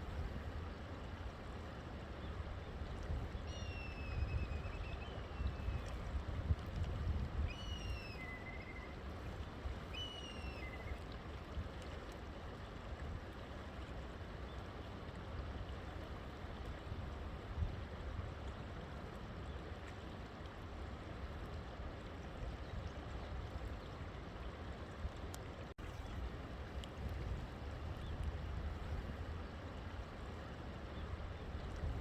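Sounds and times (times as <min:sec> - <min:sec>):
bird whistles sliding downward: 0:07.5 - 0:08.9.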